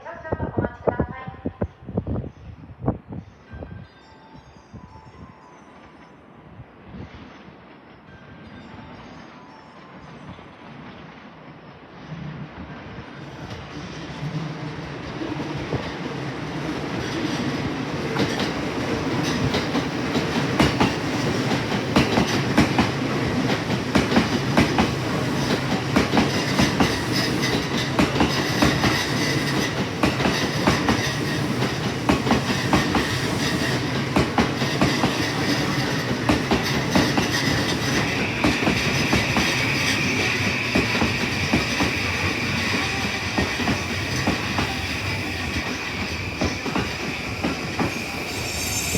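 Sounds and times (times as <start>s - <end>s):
high wheel squeal: 36.7s - 48.9s.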